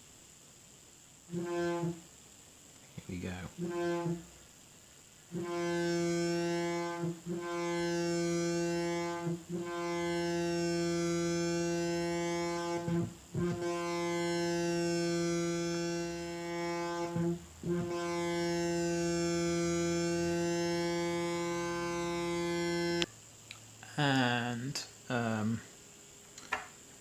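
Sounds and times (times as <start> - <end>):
buzzy synthesizer drone: 1.3 - 2.0, 3.1 - 4.3, 5.3 - 23.1.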